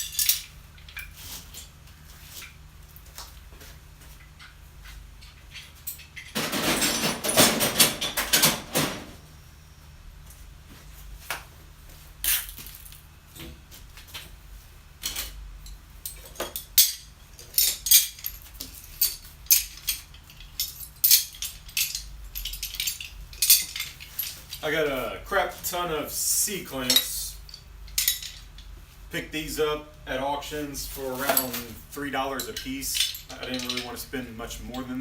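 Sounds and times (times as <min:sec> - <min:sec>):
metal clamps clanking together: 0:32.4 - 0:34.0.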